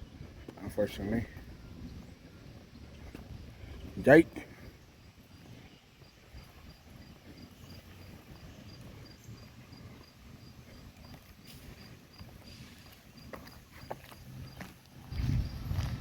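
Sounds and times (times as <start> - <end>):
faint low rumble: 4.6 - 16.0
insect chirping: 4.6 - 16.0.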